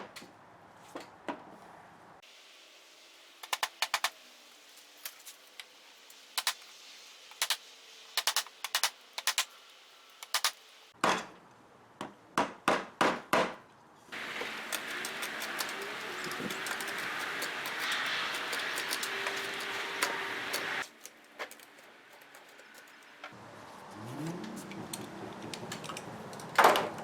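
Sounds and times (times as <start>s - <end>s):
steady hiss: 2.2s - 11.0s, 14.2s - 23.2s.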